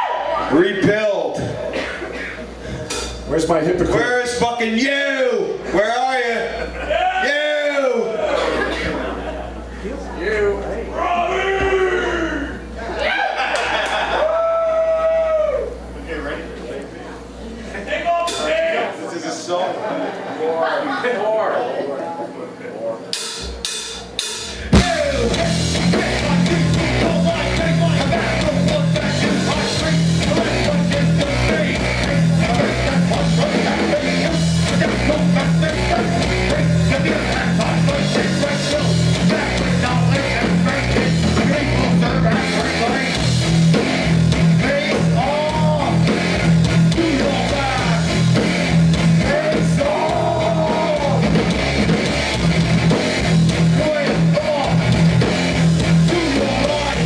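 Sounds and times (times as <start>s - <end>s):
hardcore band playing live: 2.4s - 3.4s, 18.2s - 18.5s, 23.1s - 57.0s
distorted electric guitars: 23.2s - 57.0s
pounding drums: 23.3s - 41.6s.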